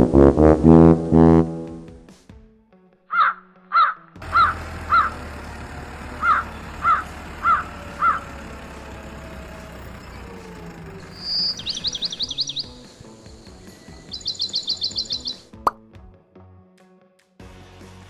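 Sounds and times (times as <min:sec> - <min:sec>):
bird cawing: 0:03.1 - 0:05.4, 0:06.0 - 0:12.8, 0:14.1 - 0:15.4
small bird whistling and trilling: 0:11.1 - 0:15.5.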